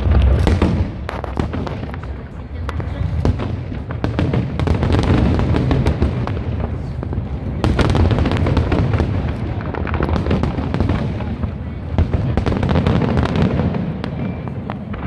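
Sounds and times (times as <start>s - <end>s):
low rumble of bursts: 0.0s - 9.7s
fireworks cracking and popping: 0.0s - 15.0s.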